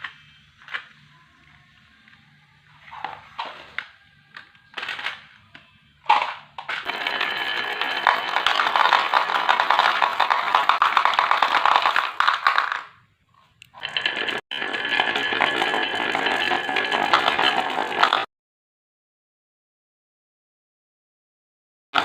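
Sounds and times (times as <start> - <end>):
marbles rolling and clattering: 6.1 - 13.0, 13.7 - 18.3
marbles knocking on wood: 6.8 - 12.9.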